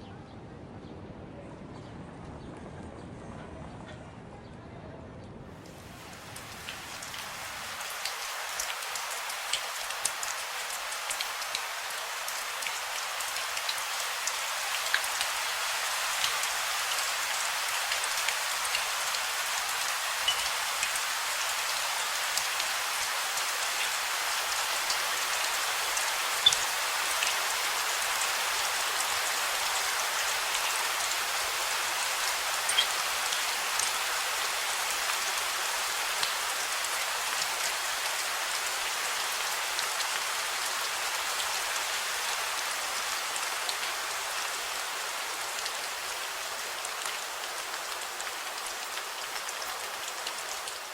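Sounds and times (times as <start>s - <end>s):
rain on hard surfaces: 5.6s - 50.9s
louder water drips: 6.1s - 35.2s.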